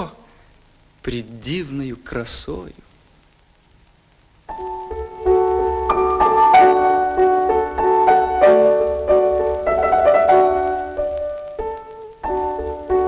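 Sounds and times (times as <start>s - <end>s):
classical instrumental music: 4.4s - 13.0s.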